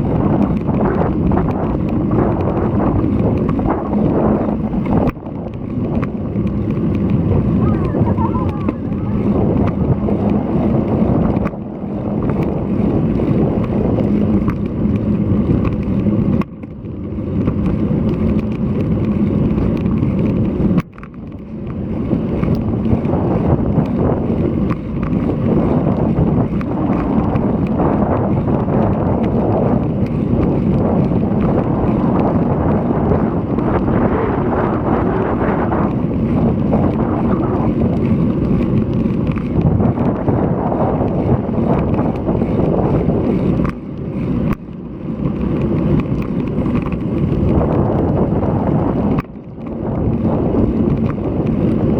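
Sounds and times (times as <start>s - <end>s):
wind rushing over microphone: 0.0s - 51.9s.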